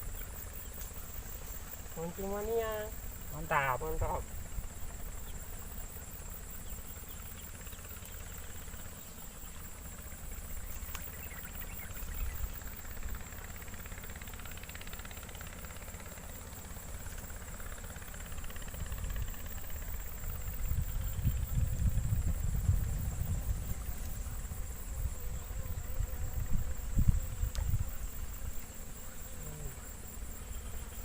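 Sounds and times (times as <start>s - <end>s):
low wind rumble: 18.2s - 28.6s
high-pitched insect buzzing: 18.5s - 31.0s.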